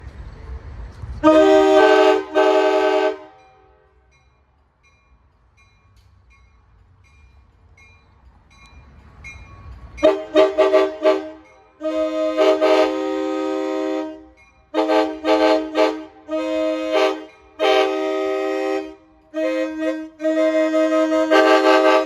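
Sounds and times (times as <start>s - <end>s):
train air horn blasts: 1.2s - 4.0s, 10.0s - 22.0s.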